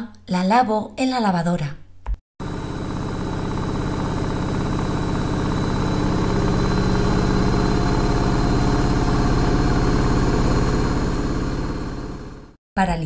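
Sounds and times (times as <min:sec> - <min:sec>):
washing machine running: 0:02.4 - 0:12.6.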